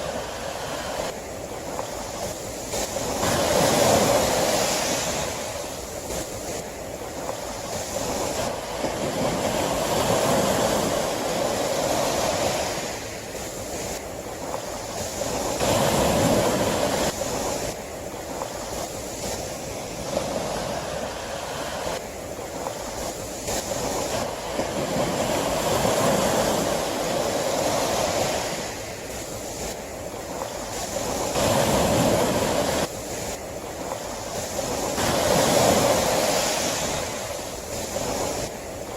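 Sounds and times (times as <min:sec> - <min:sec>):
sea waves surging: 0:00.0 - 0:38.9.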